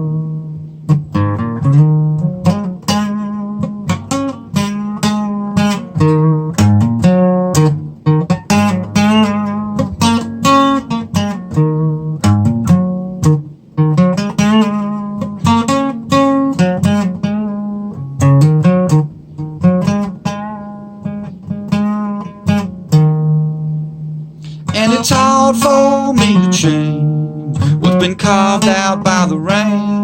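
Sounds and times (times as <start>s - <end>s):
acoustic guitar strumming: 0.0s - 30.0s
person singing: 24.4s - 30.0s.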